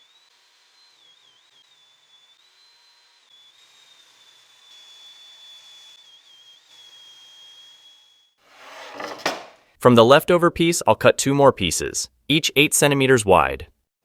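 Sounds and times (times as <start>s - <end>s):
table saw whine: 0.0s - 9.6s.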